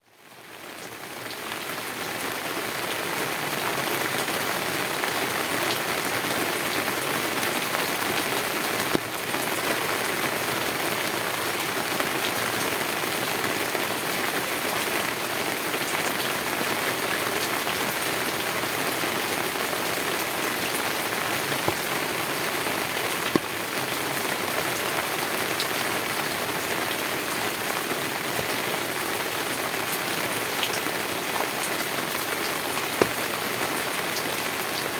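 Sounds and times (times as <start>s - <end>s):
heavy rain on a tin roof: 0.0s - 34.9s.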